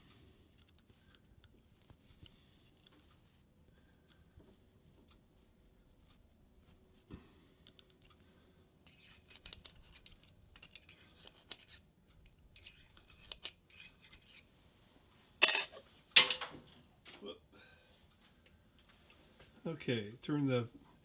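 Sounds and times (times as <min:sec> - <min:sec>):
metal parts and tools clicking: 0:08.8 - 0:14.5, 0:15.4 - 0:16.5.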